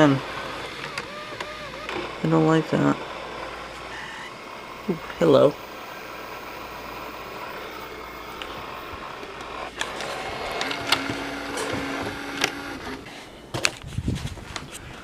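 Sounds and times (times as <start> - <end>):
sharp mechanical clicks: 0.0 - 4.9, 5.6 - 13.0
motor hum: 0.0 - 13.6
camcorder tape transport whir: 0.0 - 13.7.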